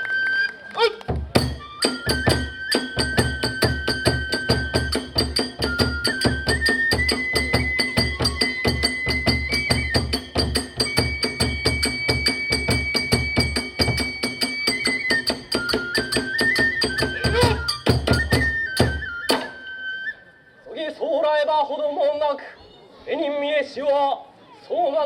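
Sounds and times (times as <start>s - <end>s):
bamboo flute long notes: 0.0s - 20.7s
drum and hand cymbals beat: 1.1s - 19.6s.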